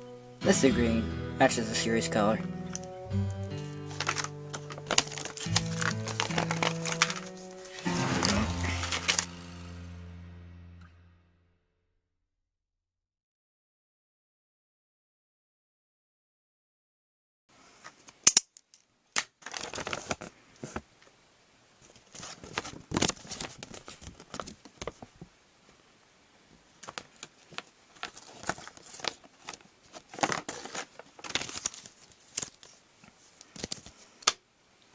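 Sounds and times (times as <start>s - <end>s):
plastic wrapper crinkling and tearing: 3.8s - 9.4s, 19.2s - 20.3s, 21.8s - 25.0s, 26.8s - 34.0s
plastic pieces clicking: 3.9s - 7.8s.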